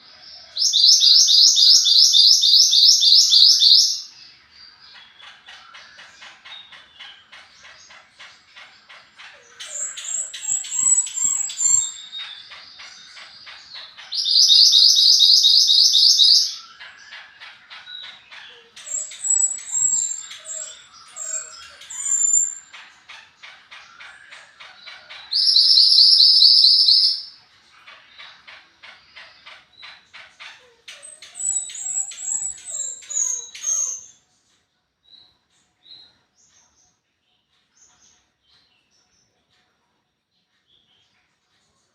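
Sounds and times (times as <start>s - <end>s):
loud rapid bird trills: 0.0s - 4.2s, 4.8s - 34.1s
songbird chatter and warbling: 0.0s - 41.9s.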